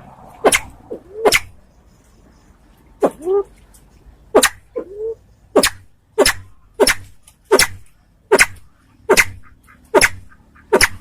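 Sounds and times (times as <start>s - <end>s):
sharp snap: 0.4s - 1.6s, 5.6s - 9.4s, 10.0s - 11.0s.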